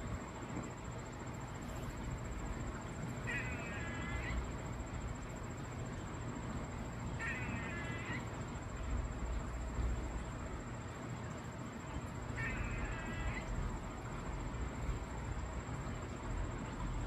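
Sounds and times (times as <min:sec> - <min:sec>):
squirrel call: 0:03.2 - 0:04.5, 0:07.1 - 0:08.4, 0:12.3 - 0:13.6.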